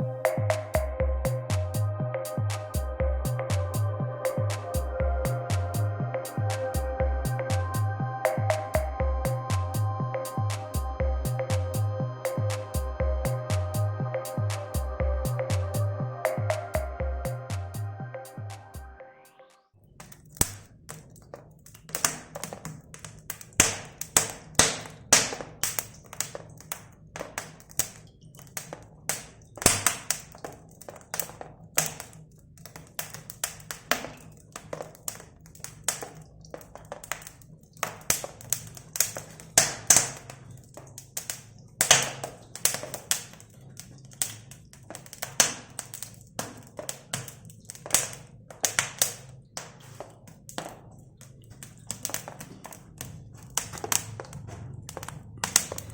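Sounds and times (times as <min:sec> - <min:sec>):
sharp taps and knocks: 0:20.0 - 0:28.0.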